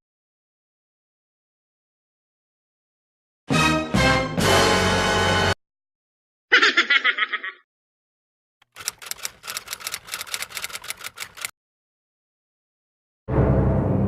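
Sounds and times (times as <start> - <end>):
quick sharp clicks: 8.6 - 11.5.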